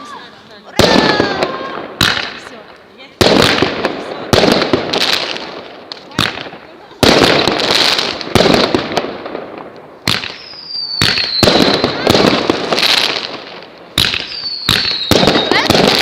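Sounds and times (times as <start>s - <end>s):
fireworks banging and crackling: 0.0s - 16.0s
whistling rocket: 10.1s - 13.2s, 14.0s - 16.0s.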